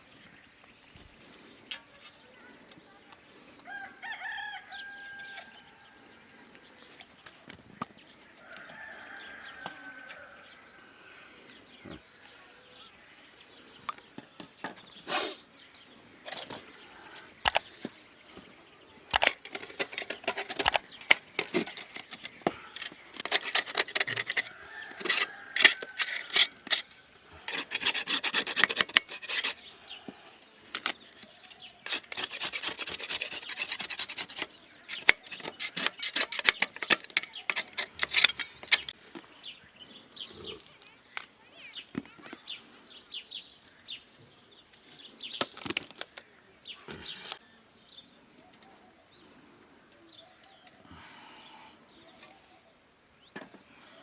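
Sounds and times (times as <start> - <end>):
hand tools rasping wood: 19.1 - 30.3, 31.8 - 38.9.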